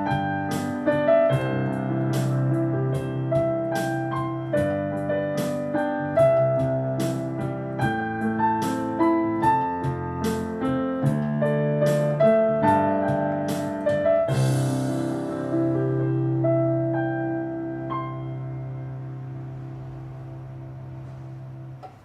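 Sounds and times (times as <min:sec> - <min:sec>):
slow piano ballad: 0:00.0 - 0:22.0.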